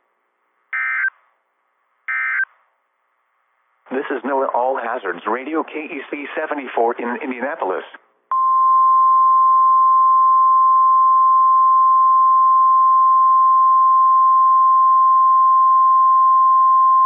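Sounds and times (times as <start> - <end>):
faint radio hiss: 0.1 - 8.3.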